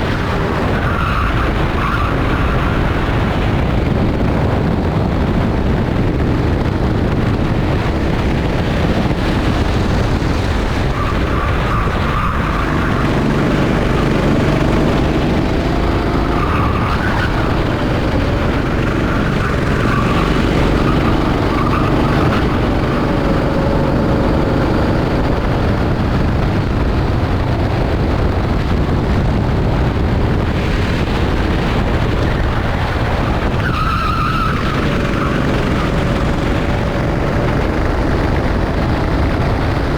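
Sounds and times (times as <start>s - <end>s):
go-kart engines racing: 0.0s - 39.9s.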